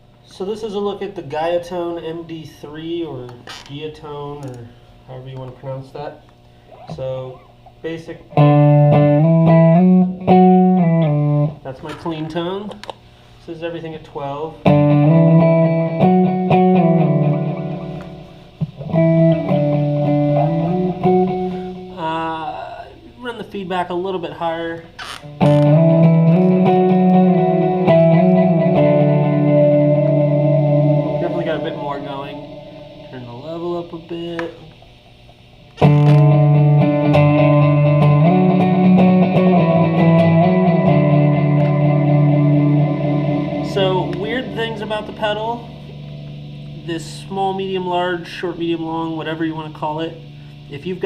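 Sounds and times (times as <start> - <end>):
clean electric guitar chords with delay: 8.3 - 11.6, 14.6 - 22.2, 25.4 - 34.8, 35.8 - 50.5.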